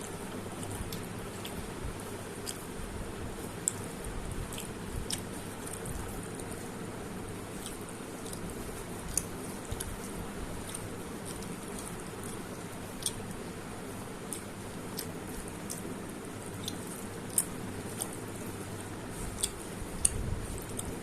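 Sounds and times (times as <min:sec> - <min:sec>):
person chewing food: 0:00.0 - 0:21.0
steady low hum: 0:00.0 - 0:21.0
wet mouth clicks and smacks: 0:16.6 - 0:18.2, 0:19.2 - 0:21.0.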